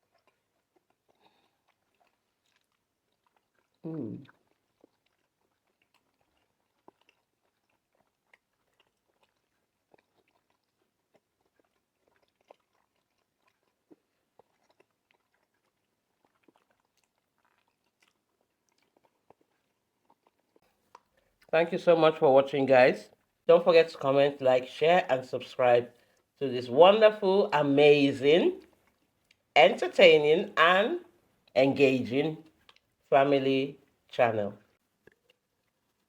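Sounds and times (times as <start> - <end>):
quiet chewing: 0.0 - 21.6, 23.0 - 23.5, 25.6 - 26.4, 28.4 - 30.0, 32.4 - 33.1, 33.7 - 36.0
short falling vocal sound: 3.8 - 4.3.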